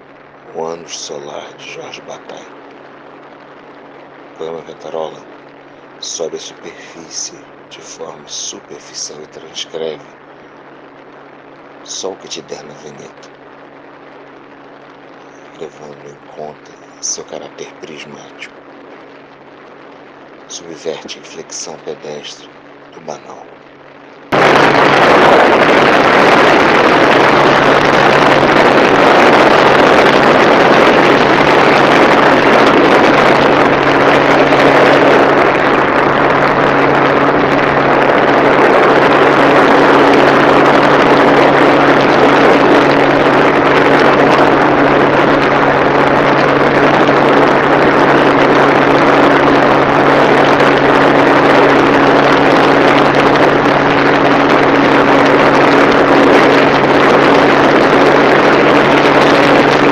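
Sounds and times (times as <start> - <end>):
higher hum tone: 0.0 - 59.9
mechanical rushing with low hum: 21.4 - 59.9.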